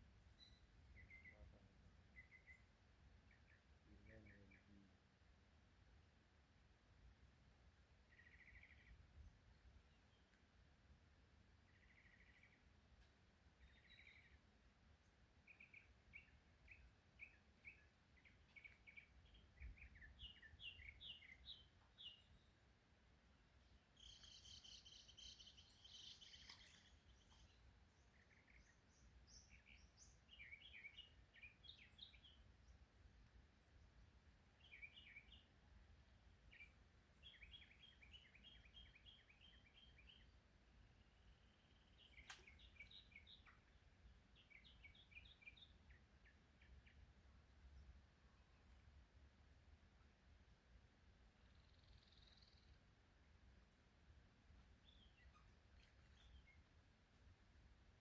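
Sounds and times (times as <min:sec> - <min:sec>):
birds chirping: 0:15.4 - 0:22.6, 0:23.6 - 0:35.5, 0:41.0 - 0:49.0.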